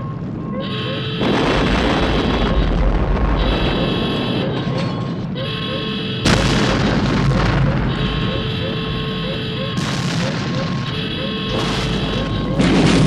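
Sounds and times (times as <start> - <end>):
alarm-like electronic tone: 0.0 - 1.4, 2.2 - 13.0
rumbling crackling destruction: 1.1 - 5.4, 6.2 - 13.0
big explosion blast: 1.2 - 4.2, 6.2 - 13.0.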